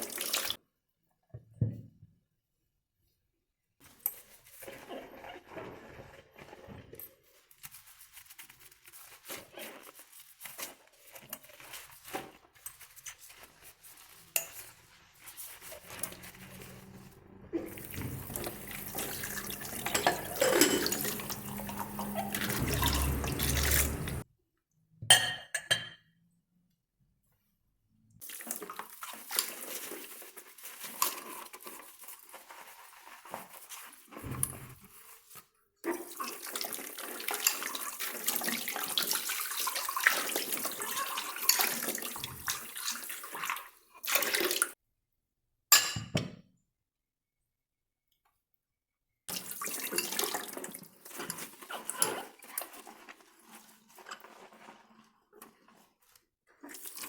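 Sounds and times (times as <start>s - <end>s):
water running from tap into sink: 0.0s - 0.6s, 17.6s - 24.2s, 36.0s - 44.8s, 49.3s - 52.0s
dishes clinking: 17.6s - 24.2s, 25.1s - 26.0s.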